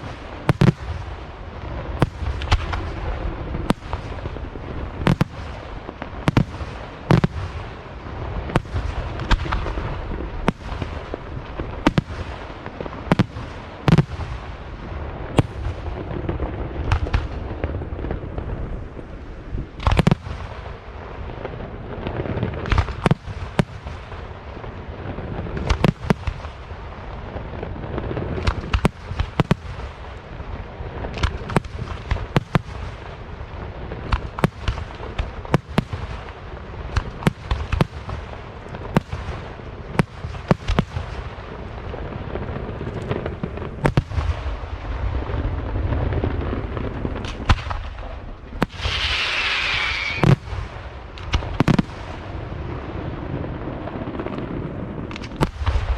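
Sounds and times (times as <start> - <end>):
fireworks crackling: 0.0 - 55.9
low rumbling from sky: 0.0 - 55.9
firework shell bursts: 48.7 - 50.3.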